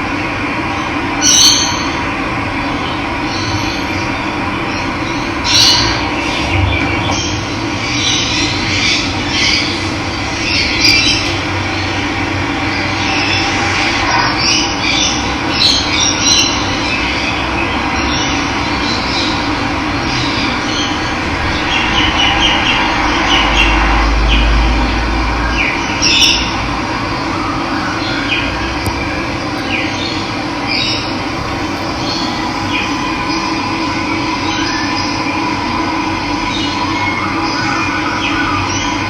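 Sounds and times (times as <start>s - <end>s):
deep rumble: 5.3s - 16.0s, 16.6s - 27.5s, 28.6s - 36.3s
birds chirping: 28.0s - 35.3s.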